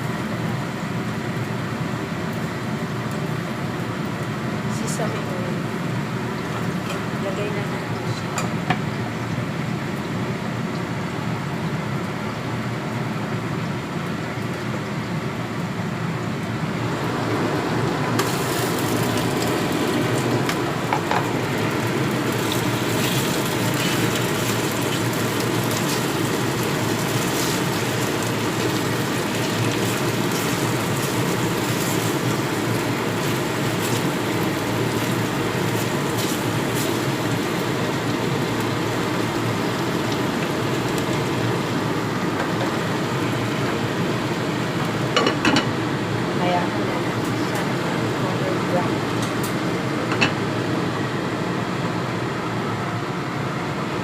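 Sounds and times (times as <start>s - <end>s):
food sizzling in oil: 16.5s - 51.0s.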